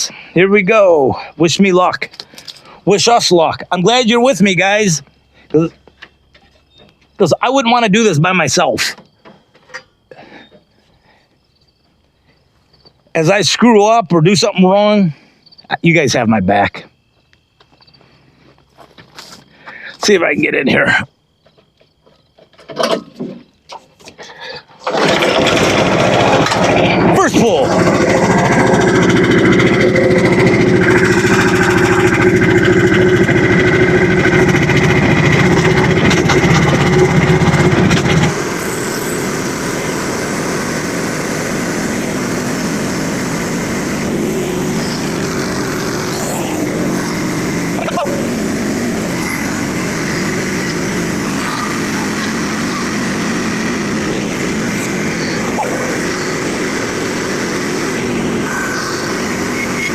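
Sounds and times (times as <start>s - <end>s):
small gasoline engine running: 24.8s - 59.9s.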